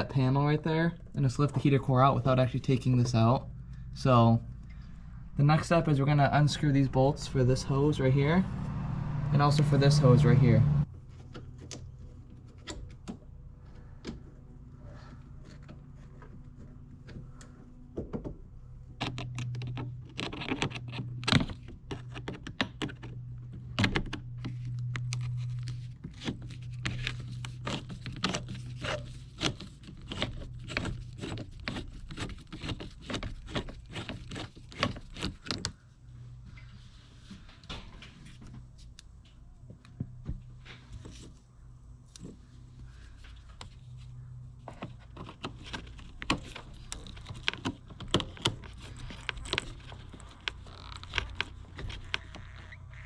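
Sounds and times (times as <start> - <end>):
steady low hum: 0.0 - 11.1.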